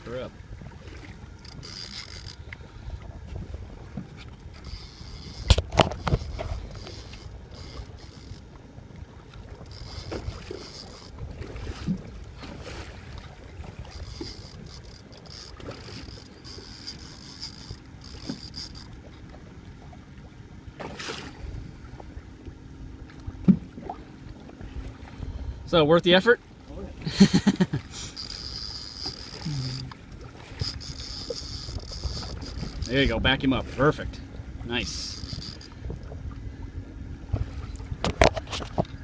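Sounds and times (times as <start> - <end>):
wind buffeting microphone: 0.0 - 19.1, 28.2 - 39.0
water lapping around boat: 0.0 - 39.0.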